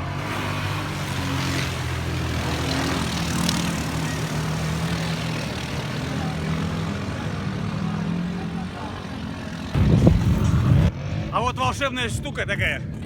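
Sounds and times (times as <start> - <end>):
atv engine running: 0.0 - 11.6.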